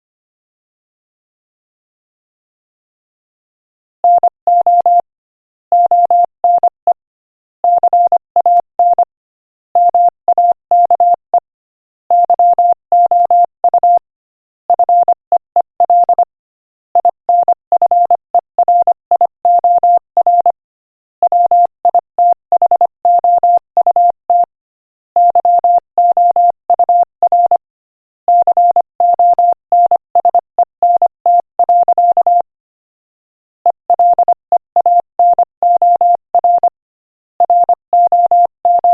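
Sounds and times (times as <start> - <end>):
morse code beeps: 4.1 - 5.0, 5.8 - 7.0, 7.7 - 9.0, 9.8 - 11.2, 12.1 - 14.1, 14.8 - 15.2, 15.8 - 16.3, 17.0 - 20.6, 21.2 - 24.5, 25.2 - 27.6, 28.3 - 32.5, 33.7 - 36.8, 37.4 - 38.9.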